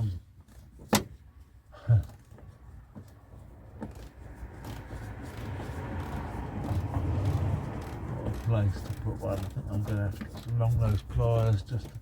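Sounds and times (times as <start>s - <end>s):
rustling scraping handling noise: 0.0s - 12.0s.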